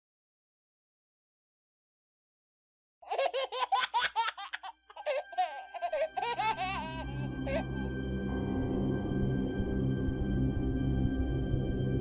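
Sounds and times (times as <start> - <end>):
high-pitched laughter: 3.1 - 7.9
ambient music: 4.9 - 12.0.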